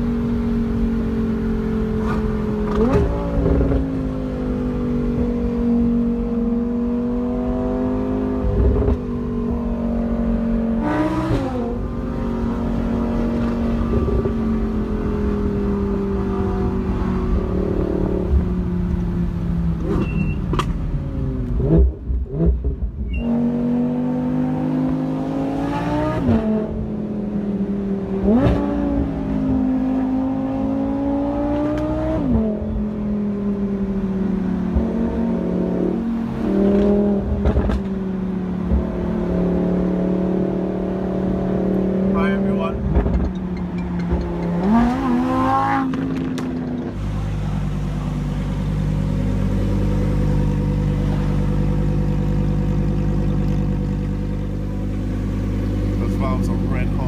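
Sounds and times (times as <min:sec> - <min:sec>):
gear changes: 0:00.0 - 0:26.9, 0:31.4 - 0:57.0
car engine cruising: 0:00.0 - 0:57.0.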